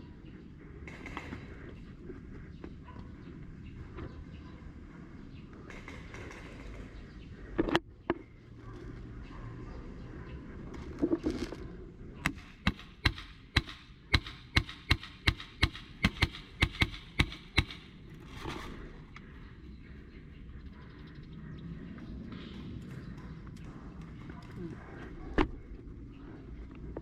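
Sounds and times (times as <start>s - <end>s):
airsoft gun shots: 12.2s - 18.0s.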